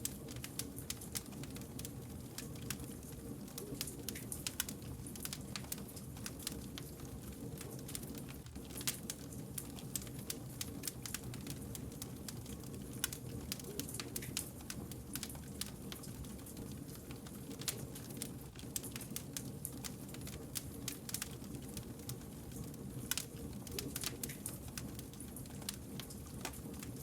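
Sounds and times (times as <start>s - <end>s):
campfire snaps and pops: 0.0s - 27.0s.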